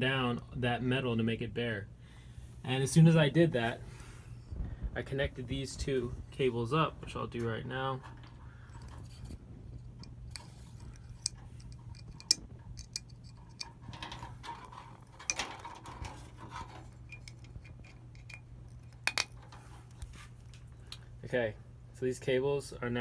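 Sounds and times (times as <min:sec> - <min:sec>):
steady low hum: 0:00.0 - 0:23.0
small metal clicks and taps: 0:10.0 - 0:21.0.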